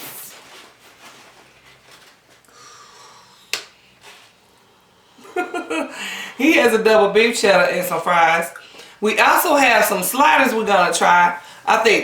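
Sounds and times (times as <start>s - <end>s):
faint rustling: 0.0s - 2.8s.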